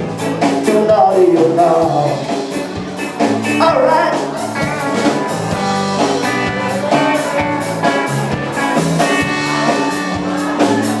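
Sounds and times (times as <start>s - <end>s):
bass guitar: 0.0s - 11.0s
drum kit steady beat: 0.0s - 11.0s
electric guitar: 0.0s - 11.0s.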